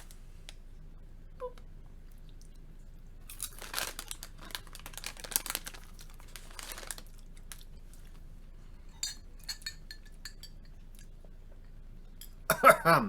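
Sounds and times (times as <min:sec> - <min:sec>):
popcorn crunching: 0:02.1 - 0:08.2
snack packet crinkling: 0:03.3 - 0:08.2.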